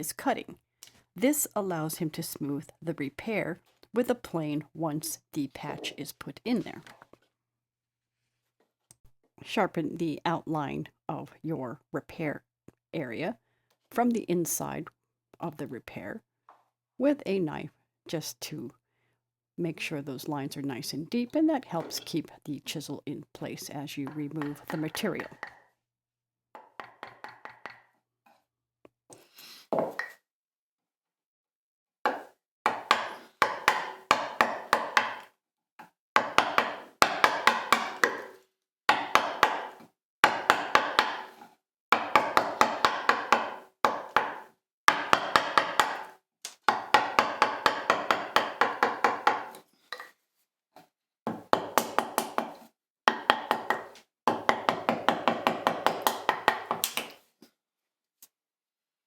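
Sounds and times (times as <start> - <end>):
mallet tapping chisel into wood: 26.6 - 27.9, 32.1 - 35.3, 36.2 - 38.3, 38.9 - 41.3, 41.9 - 46.1, 46.7 - 49.6, 51.3 - 57.1.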